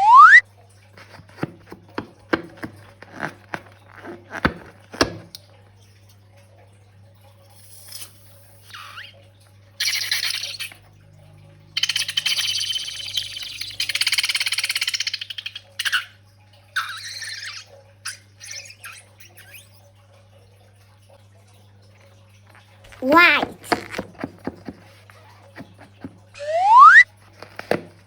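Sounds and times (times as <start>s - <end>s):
slime squelching: 1.0s - 5.4s, 22.9s - 28.0s.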